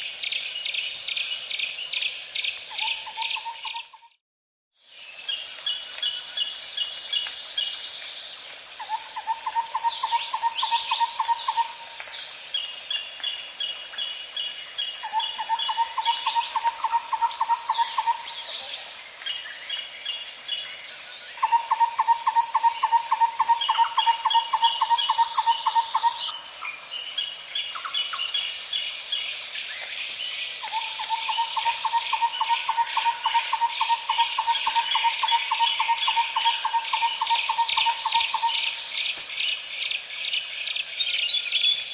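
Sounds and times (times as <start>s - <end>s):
birds chirping: 8.8s - 12.7s, 13.3s - 41.9s.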